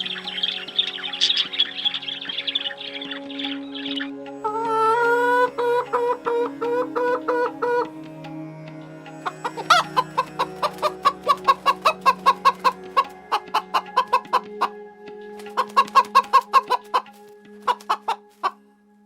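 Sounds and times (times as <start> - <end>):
chickens clucking: 0.0 - 7.9, 9.2 - 14.8, 15.4 - 18.6
chicken squawk: 9.2 - 14.7, 15.4 - 18.6.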